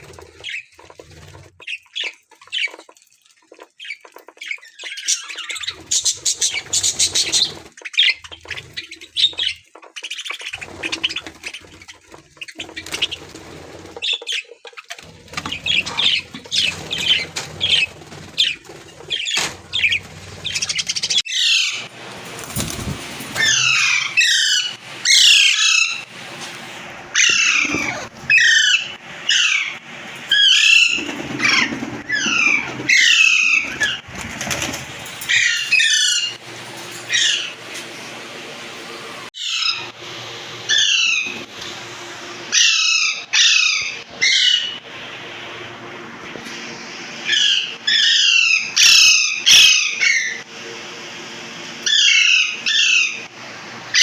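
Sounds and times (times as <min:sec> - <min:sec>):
budgies chirping: 0:00.0 - 0:37.8, 0:42.5 - 0:44.8.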